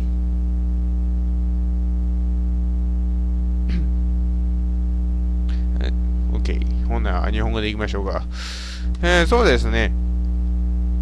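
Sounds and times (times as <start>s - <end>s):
electrical mains hum: 0.0s - 11.0s.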